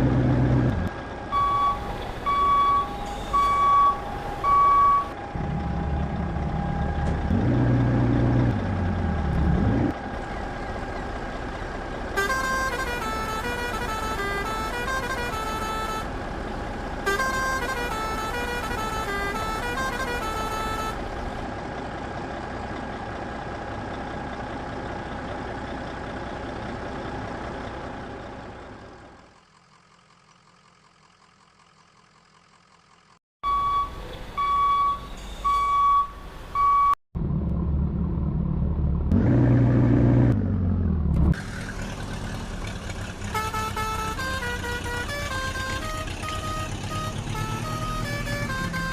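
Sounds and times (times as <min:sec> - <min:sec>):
truck engine rumbling and revving: 0:00.0 - 0:48.9
vehicle horn honking: 0:12.2 - 0:16.2, 0:17.0 - 0:21.1, 0:43.2 - 0:48.9.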